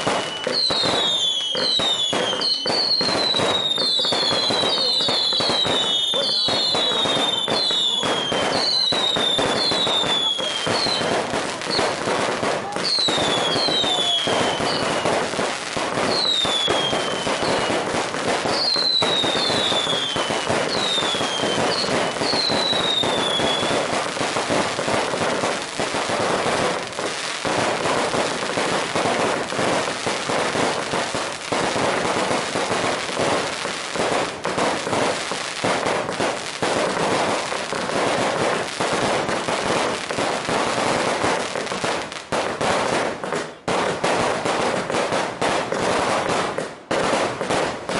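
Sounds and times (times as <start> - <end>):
falling firework whistles: 0.0 - 11.1, 12.7 - 25.5
firecracker pops crackling: 0.0 - 47.9.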